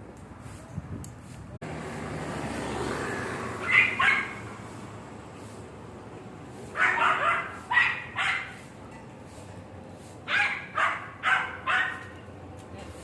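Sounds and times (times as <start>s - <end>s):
dog barking: 3.6s - 4.5s, 6.7s - 8.6s, 10.3s - 12.1s.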